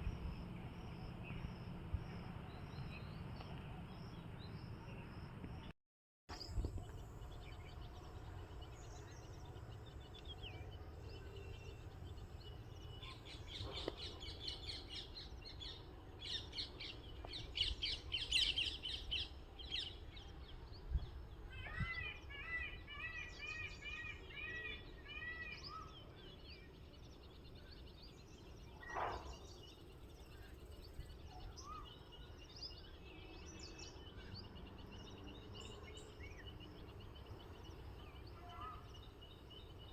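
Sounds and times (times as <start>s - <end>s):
wild birds calling: 27.2s - 32.4s, 33.5s - 39.9s.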